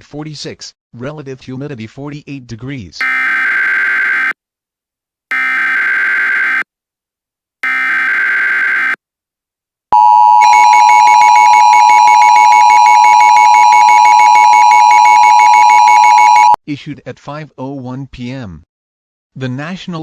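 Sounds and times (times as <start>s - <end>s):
loud steady attention tone: 10.0s - 16.6s.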